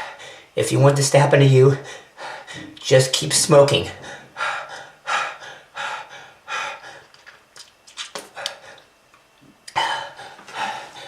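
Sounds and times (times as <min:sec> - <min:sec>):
person gasping for breath: 0:09.7 - 0:11.0.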